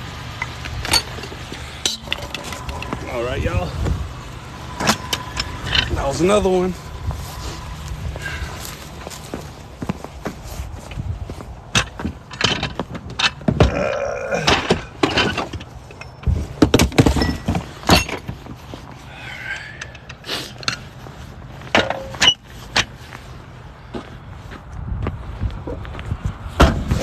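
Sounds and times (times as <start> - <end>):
knocks and clatter: 0.4 - 3.1, 11.7 - 18.6.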